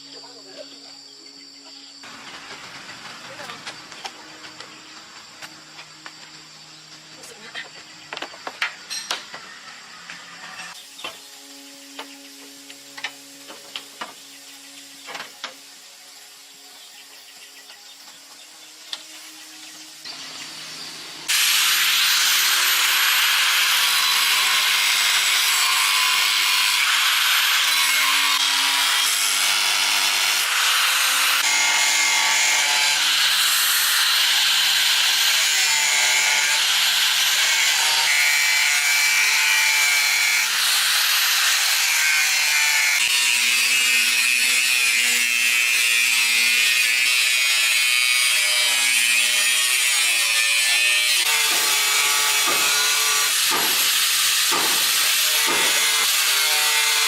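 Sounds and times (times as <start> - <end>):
power tool harsh rasp: 21.3 - 57.0.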